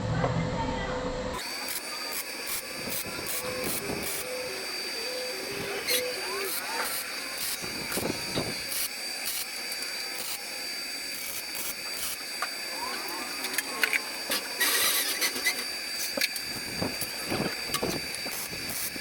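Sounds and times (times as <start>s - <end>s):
sharp welding clicks: 1.4s - 4.5s, 5.8s - 10.5s, 11.1s - 12.5s, 13.5s - 19.0s
arc welder crackling hiss: 1.4s - 19.0s.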